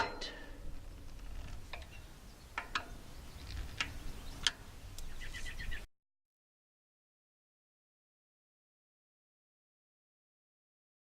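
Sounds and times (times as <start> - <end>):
bird chirps: 1.8 - 5.9.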